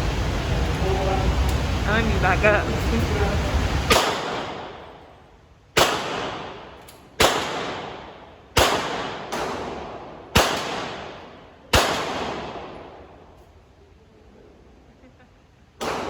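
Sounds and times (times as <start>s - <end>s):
gunshots echoing: 3.8s - 5.0s, 5.8s - 13.1s, 15.8s - 16.0s
faint gunshot: 3.9s - 4.8s, 7.2s - 12.7s, 15.8s - 16.0s.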